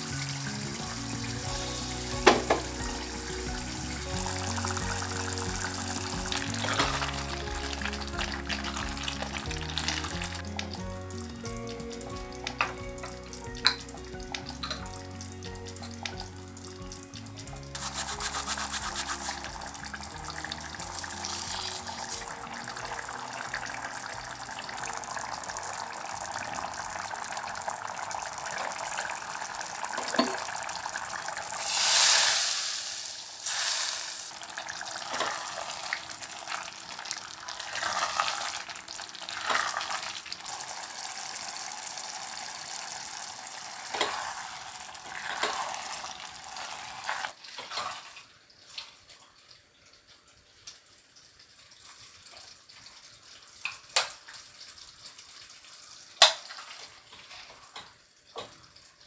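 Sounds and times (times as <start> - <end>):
soft background music: 0.0 - 32.5, 40.6 - 47.2
food sizzling in hot oil: 0.0 - 48.2
stirring: 17.8 - 24.9.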